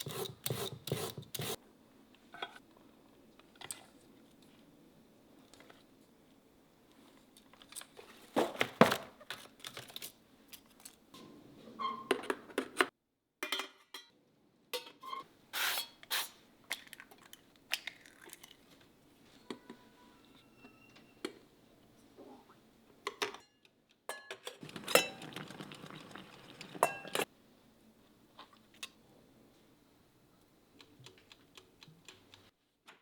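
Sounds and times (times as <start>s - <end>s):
dishes and utensils clinking: 23.1s - 27.3s.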